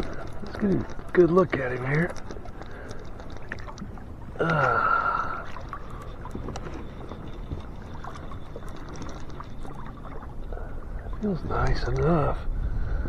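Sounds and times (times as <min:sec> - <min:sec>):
small clicks and knocks: 0:00.0 - 0:03.9
water and wind noise: 0:00.0 - 0:13.0.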